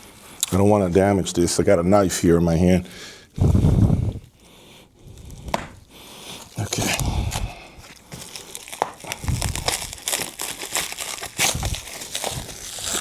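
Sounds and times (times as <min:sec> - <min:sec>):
packaging crumpling and tearing: 0:05.0 - 0:13.0.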